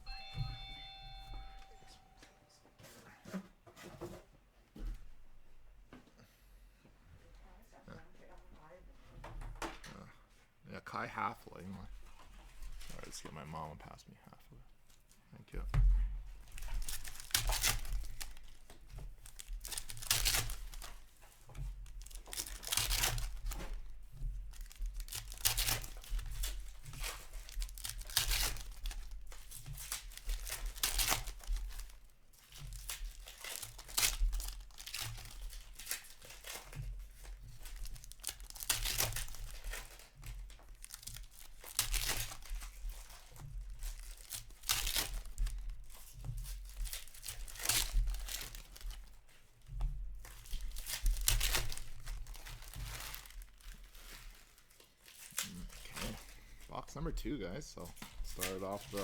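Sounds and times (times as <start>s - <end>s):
card pack wrappers ripping: 16.4s - 49.2s, 50.3s - 56.6s, 57.8s - 59.0s.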